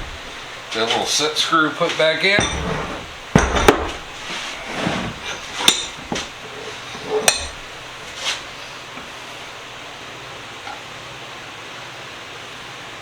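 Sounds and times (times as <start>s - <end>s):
metal tools clinking and knocking: 2.3s - 7.8s.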